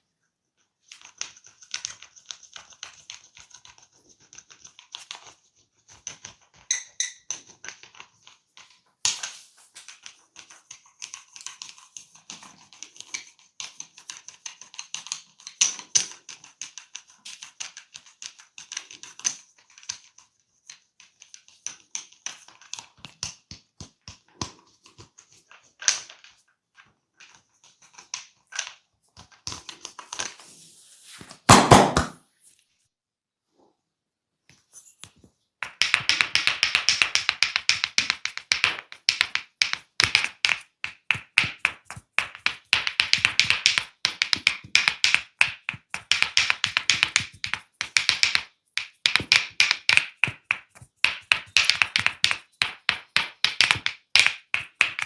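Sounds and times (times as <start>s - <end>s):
hands scratching on head: 30.3s - 31.3s.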